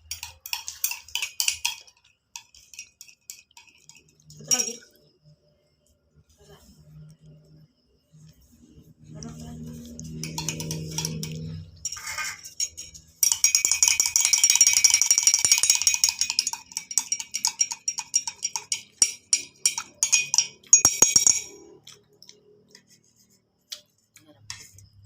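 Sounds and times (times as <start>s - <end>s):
spoon stirring and clinking in container: 0.0s - 5.2s, 9.2s - 23.0s.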